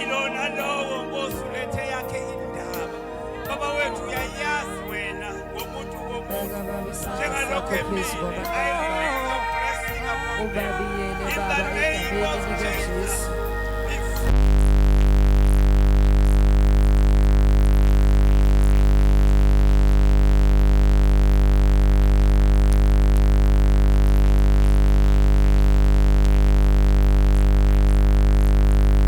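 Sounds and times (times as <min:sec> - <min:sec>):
steady electronic drone: 0:00.0 - 0:15.4.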